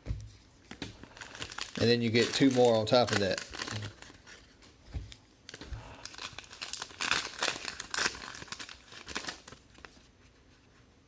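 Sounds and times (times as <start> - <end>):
card pack wrappers crinkling: 0.7 - 4.5, 5.4 - 9.9.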